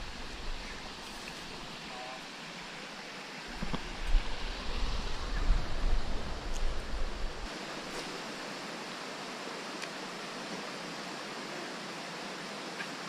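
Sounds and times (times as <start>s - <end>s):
wind buffeting microphone: 3.5s - 7.5s.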